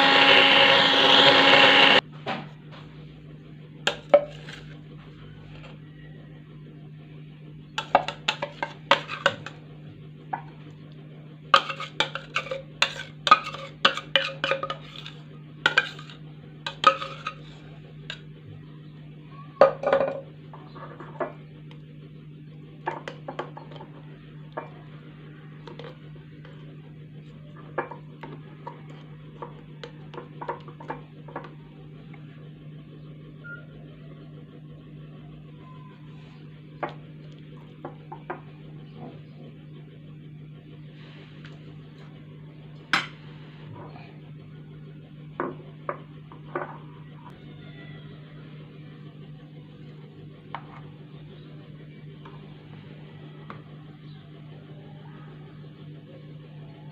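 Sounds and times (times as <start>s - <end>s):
steady low hum: 0.0s - 56.9s
utensils clinking on dishes: 7.8s - 9.6s, 11.6s - 18.3s.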